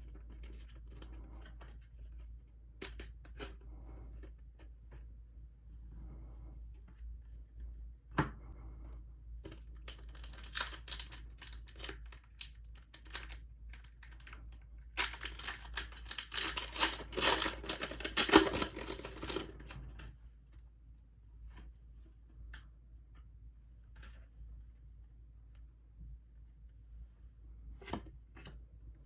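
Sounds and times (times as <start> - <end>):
packaging crinkling and tearing: 9.9 - 14.4, 15.0 - 19.8.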